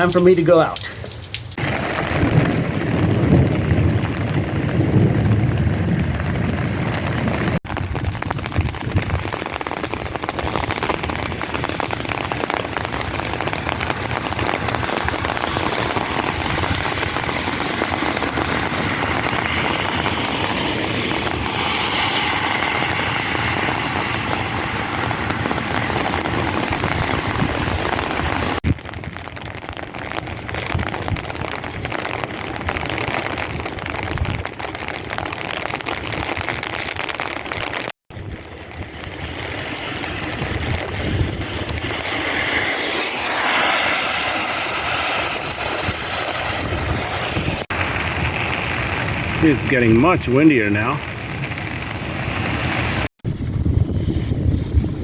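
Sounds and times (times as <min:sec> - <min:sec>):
steady rain falling: 0:00.0 - 0:53.2
low rumble: 0:53.2 - 0:55.0.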